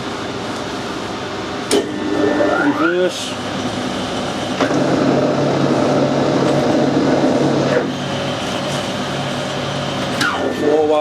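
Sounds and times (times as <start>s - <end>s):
lathe humming: 8.0s - 10.5s
lathe gear train clattering: 8.1s - 10.4s.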